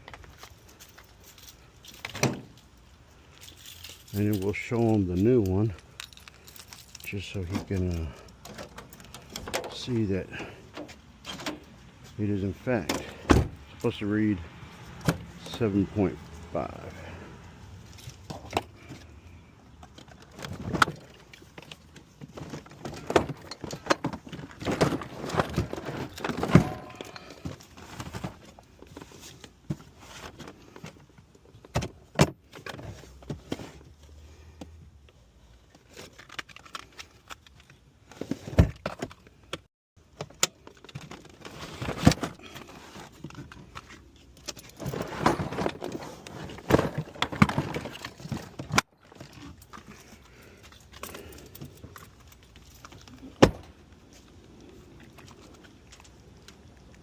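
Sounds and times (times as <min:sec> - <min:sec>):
metal tools clinking and rattling: 0:00.1 - 0:11.7, 0:19.8 - 0:28.2, 0:40.6 - 0:53.4.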